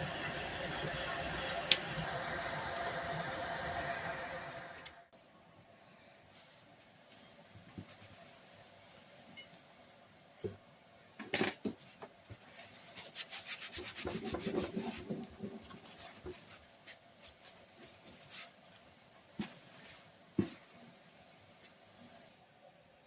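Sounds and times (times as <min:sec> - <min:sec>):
rubbing strokes by hand: 0:12.5 - 0:18.7.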